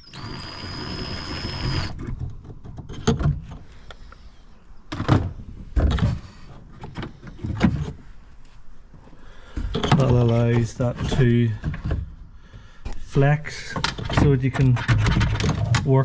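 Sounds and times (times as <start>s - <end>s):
electric screwdriver whirring: 0.0s - 2.0s.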